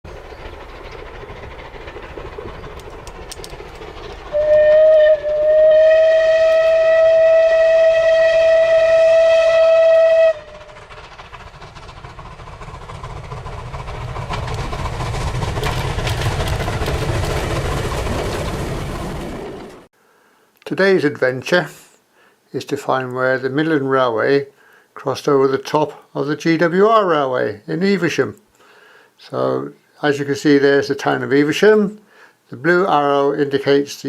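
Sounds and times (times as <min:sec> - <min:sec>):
train rumbling on rails: 0:00.1 - 0:19.9
train whistle: 0:04.3 - 0:10.8.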